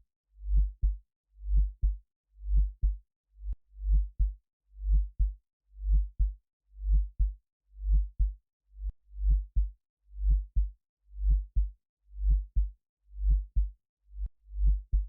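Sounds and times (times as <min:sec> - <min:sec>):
synthesized heartbeat thumps: 0:07.9 - 0:08.3, 0:10.3 - 0:10.7, 0:13.3 - 0:13.7, 0:14.6 - 0:15.0.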